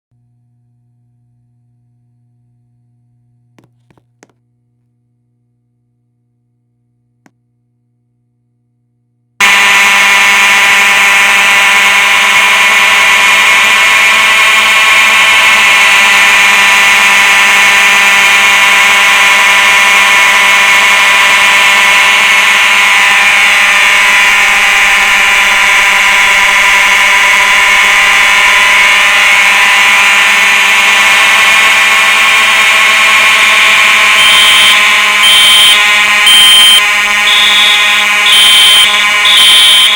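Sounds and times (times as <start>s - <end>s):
fire alarm horn buzzing: 9.4s - 39.9s.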